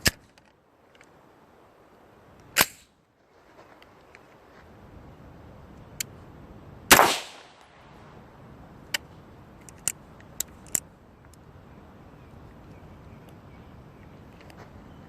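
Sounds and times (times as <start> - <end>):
rifle shot with echo: 6.9 - 7.8.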